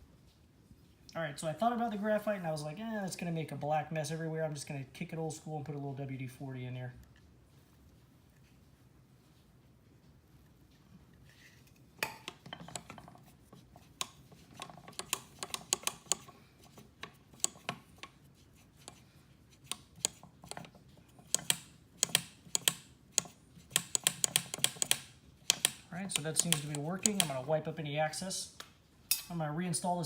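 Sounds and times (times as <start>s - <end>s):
accelerator pedal clicking: 21.3s - 27.4s.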